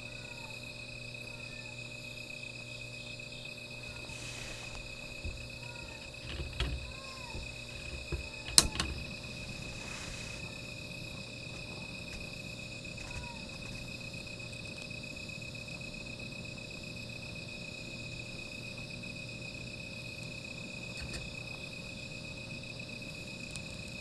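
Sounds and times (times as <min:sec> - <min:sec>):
night insects trilling: 0:00.0 - 0:24.0
short hiss: 0:03.8 - 0:06.4, 0:09.2 - 0:11.0.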